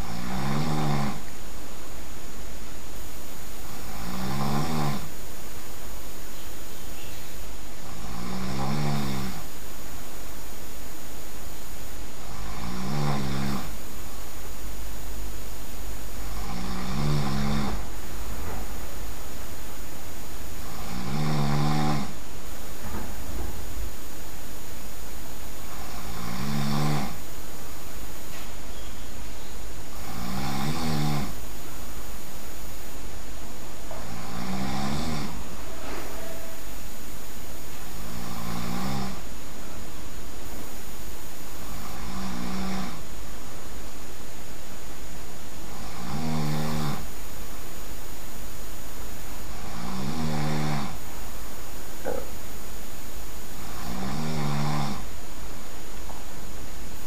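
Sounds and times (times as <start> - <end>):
person snoring loudly: 0.0 - 1.3, 3.6 - 5.1, 7.8 - 9.5, 12.2 - 13.8, 16.2 - 17.9, 20.6 - 22.2, 25.7 - 27.2, 29.9 - 31.4, 34.0 - 35.5, 38.0 - 39.3, 41.6 - 43.1, 45.7 - 47.1, 49.5 - 51.0, 53.6 - 55.1
background hiss: 0.0 - 57.0.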